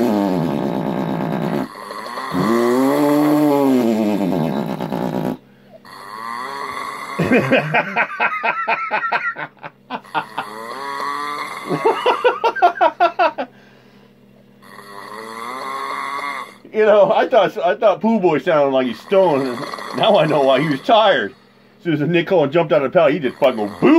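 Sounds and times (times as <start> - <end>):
man snoring loudly: 0.0 - 13.2, 14.6 - 16.7, 18.8 - 21.6, 23.0 - 23.9.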